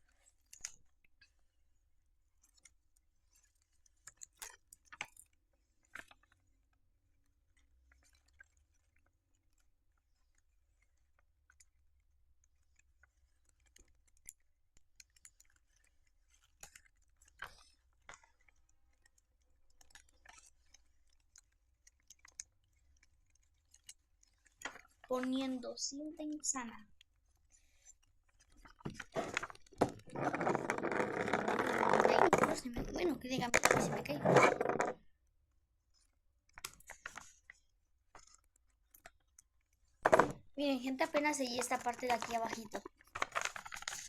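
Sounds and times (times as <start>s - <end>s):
sticky tape crinkling and clicking: 41.0s - 44.0s.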